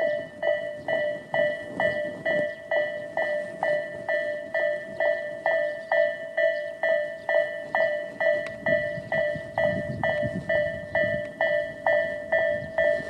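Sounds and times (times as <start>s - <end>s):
level crossing warning bell: 0.0s - 13.0s.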